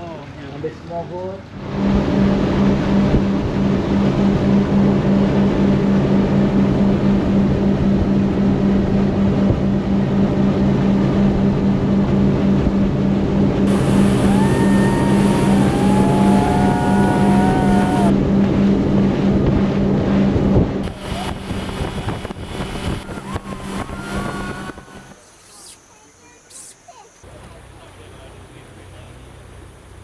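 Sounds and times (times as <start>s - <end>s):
outboard motor droning: 1.2s - 25.8s, 27.3s - 30.0s
wind on microphone: 13.6s - 18.4s, 19.0s - 25.2s.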